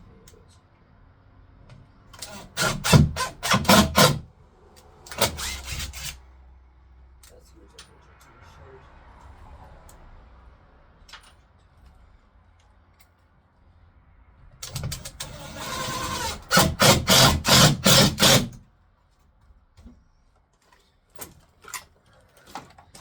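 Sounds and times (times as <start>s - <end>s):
power drill driving a screw: 2.2s - 4.2s, 5.1s - 6.2s, 14.7s - 18.6s.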